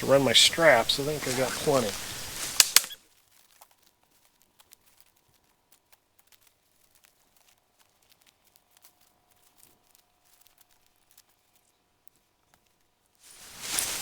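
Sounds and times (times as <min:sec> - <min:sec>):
faint clicks: 0:00.0 - 0:03.0.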